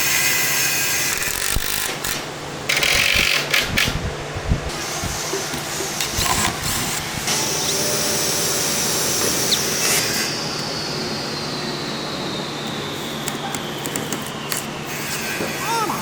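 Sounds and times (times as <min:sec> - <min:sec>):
power tool motor whining: 0:04.7 - 0:15.6.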